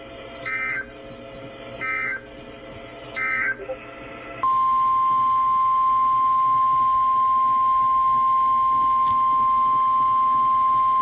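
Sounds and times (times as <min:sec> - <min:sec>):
steady warning alarm tone: 0:00.4 - 0:01.0, 0:01.7 - 0:02.3, 0:03.1 - 0:11.0.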